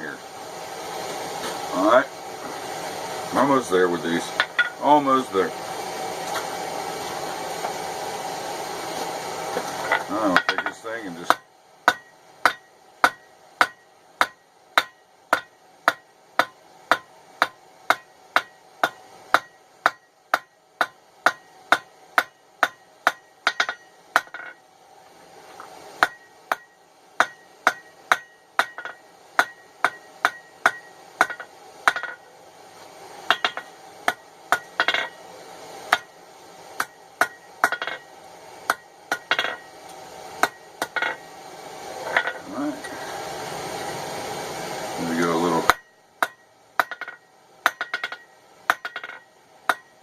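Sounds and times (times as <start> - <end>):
faint steady hum: 0.0 - 50.0
hammer striking steel on anvil: 9.9 - 24.6, 26.0 - 32.3, 33.3 - 35.2, 35.9 - 36.2, 36.8 - 39.8, 40.4 - 41.2, 45.6 - 50.0.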